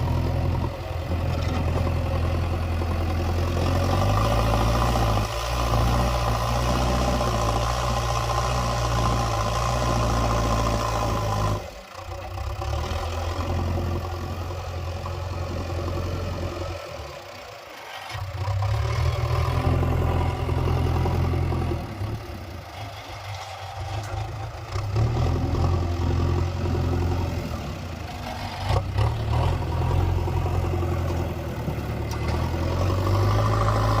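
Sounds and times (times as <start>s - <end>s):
heavy diesel engine running: 0.0s - 34.0s.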